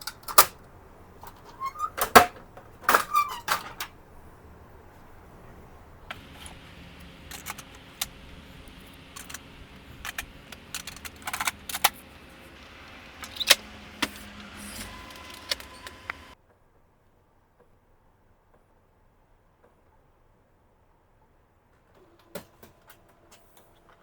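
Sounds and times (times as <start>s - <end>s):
steady low hum: 5.8s - 16.4s
plastic parts clicking and knocking: 6.1s - 16.4s.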